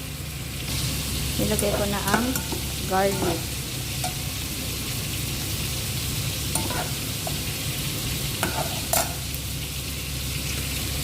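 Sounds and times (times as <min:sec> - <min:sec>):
onion and garlic sizzling: 0:00.0 - 0:11.0
utensil clinking against pan: 0:06.6 - 0:07.4, 0:08.4 - 0:09.2.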